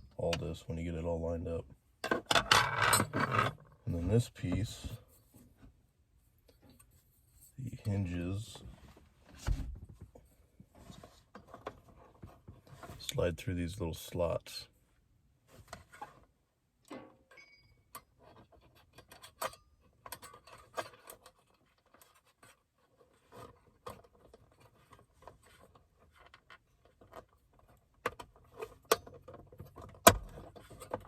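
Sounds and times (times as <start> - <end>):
plastic parts clicking and scraping: 2.0 - 3.8, 18.0 - 31.0.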